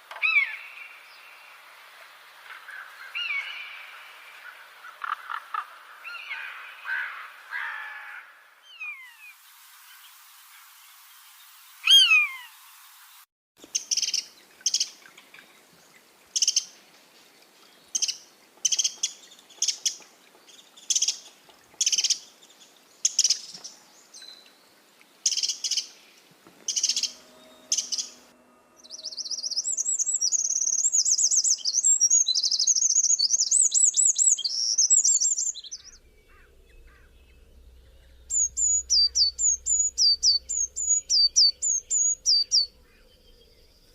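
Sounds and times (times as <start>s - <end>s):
rapid high warbling birdsong: 8.6s - 16.8s, 17.6s - 43.9s
falling whistled bird note: 11.8s - 12.5s
short high bird call notes: 11.8s - 12.6s
quick bird chirps: 38.2s - 42.7s.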